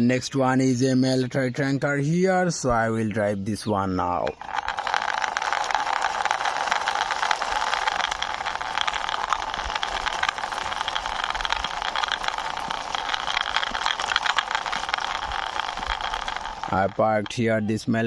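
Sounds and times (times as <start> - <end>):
toy tank wheels rolling and rattling: 2.5 - 18.0.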